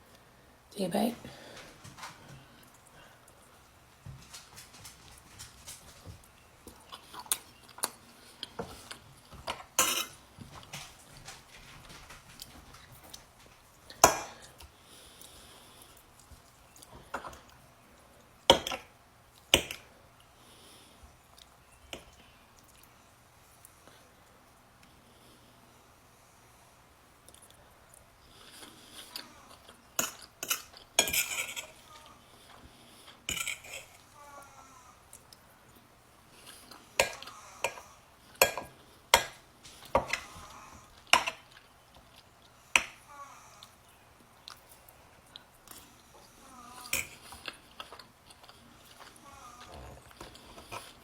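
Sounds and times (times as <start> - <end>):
utensils clinking against a plate: 9.5 - 10.9, 30.0 - 31.8, 33.3 - 34.0.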